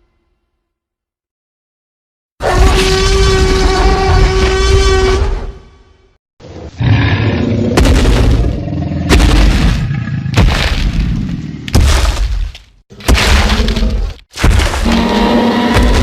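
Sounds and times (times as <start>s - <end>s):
dinosaur roars: 6.7s - 10.4s.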